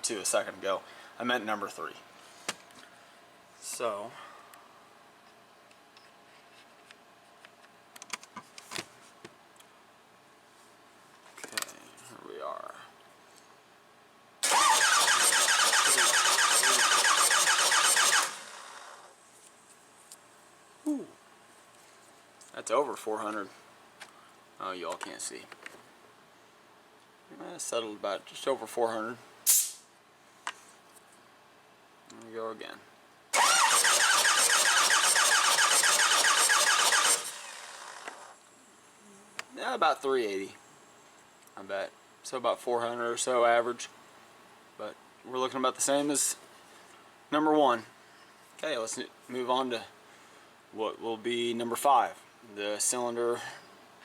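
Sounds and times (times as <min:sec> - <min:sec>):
starter motor cranking diesel engine: 0:14.4 - 0:19.0, 0:33.4 - 0:38.3.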